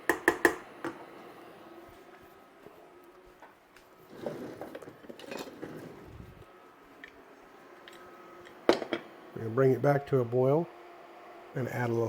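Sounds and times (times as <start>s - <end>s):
spoon scraping a pan: 4.1s - 6.0s.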